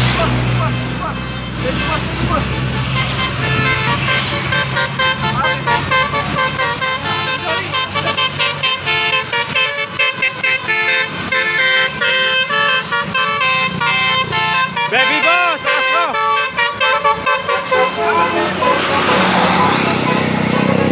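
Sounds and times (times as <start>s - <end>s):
bus engine hum: 0.0s - 20.9s
bus musical horn melody: 0.0s - 20.9s.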